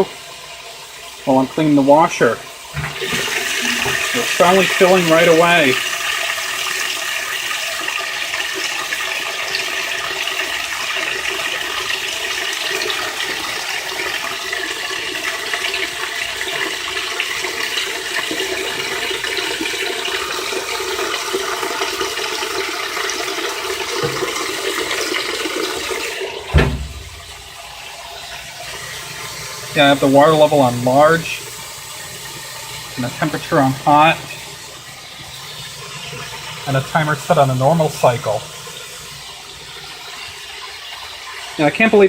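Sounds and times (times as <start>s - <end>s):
water filling washing machine tub: 0.0s - 42.0s
thump: 26.5s - 27.4s.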